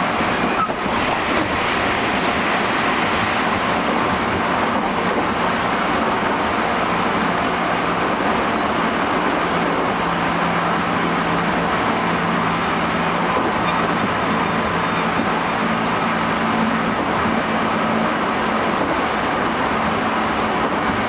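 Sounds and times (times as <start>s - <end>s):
wheel and rail noise: 0.0s - 21.0s
electric train motor hum: 8.8s - 20.6s.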